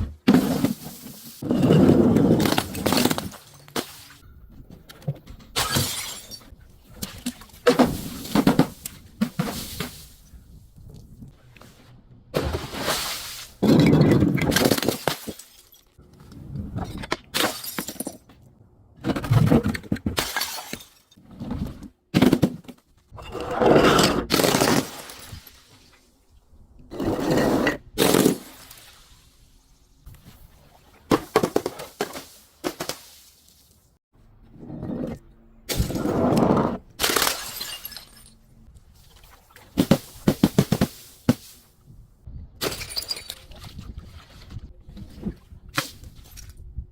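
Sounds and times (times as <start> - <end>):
glass bottles shattering: 5.6 - 6.5, 13.6 - 16.0, 16.8 - 18.3, 20.2 - 21.2, 37.0 - 38.4, 42.6 - 43.4.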